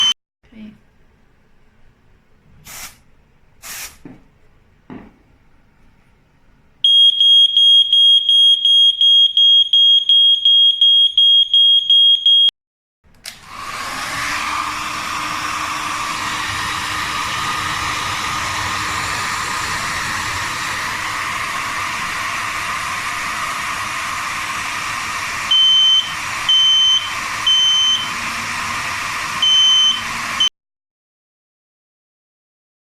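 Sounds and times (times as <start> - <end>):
hot-air blower hissing: 2.6 - 3.0, 3.6 - 4.1, 13.3 - 30.5
piercing high alarm beeping: 6.9 - 12.5, 25.5 - 28.1, 29.4 - 30.1.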